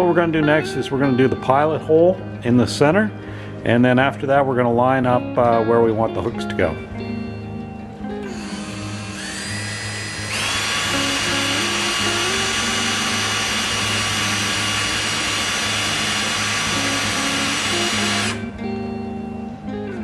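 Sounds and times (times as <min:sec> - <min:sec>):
power drill boring into wood: 0:08.3 - 0:18.5.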